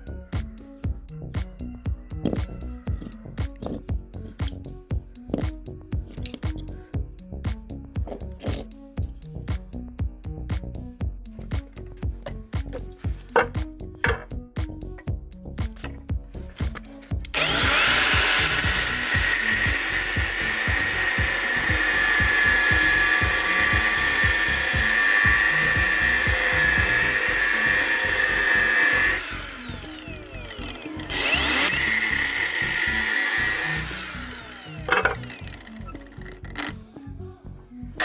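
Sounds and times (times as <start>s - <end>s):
background music with steady beat: 0.0s - 38.0s
power tool running: 17.2s - 36.8s.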